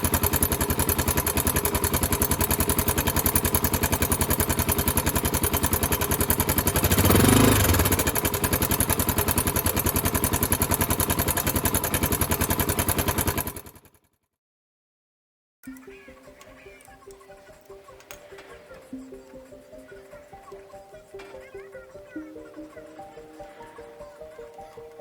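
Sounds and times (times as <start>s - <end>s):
motorcycle engine idling: 0.0s - 13.9s
mechanical clatter from engine: 0.0s - 14.0s.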